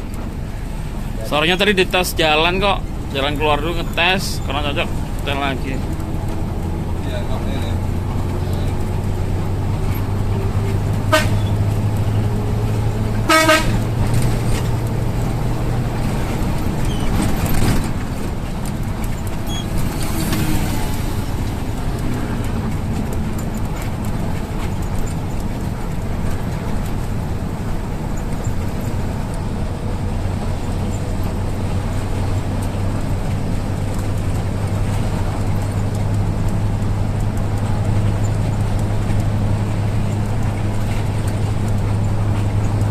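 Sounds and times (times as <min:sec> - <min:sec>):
bus engine humming: 0:00.0 - 0:42.9
horn toots: 0:11.0 - 0:11.8, 0:13.2 - 0:14.4.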